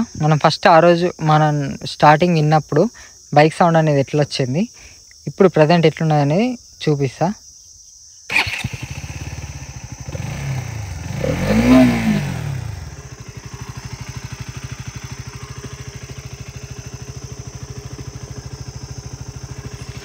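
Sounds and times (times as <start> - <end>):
motorcycle engine revving and idling: 8.3 - 20.0.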